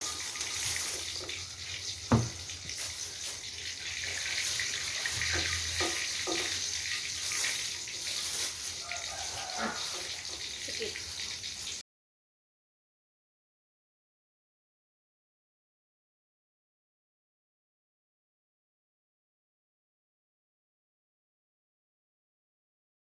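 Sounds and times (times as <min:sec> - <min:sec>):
water running from a tap: 0:00.0 - 0:11.8
sharp knock: 0:02.1 - 0:02.4.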